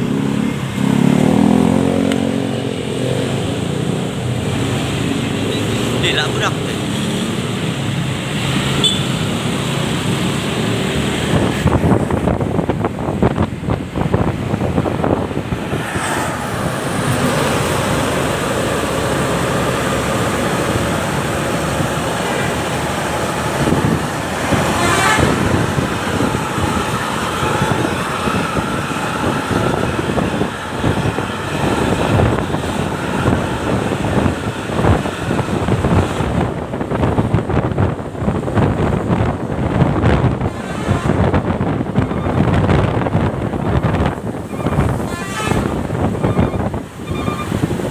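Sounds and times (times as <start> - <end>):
vehicle engines running: 0.0 - 47.9
car horn toots: 8.8 - 9.2, 24.6 - 25.6, 40.6 - 42.4, 44.5 - 46.2.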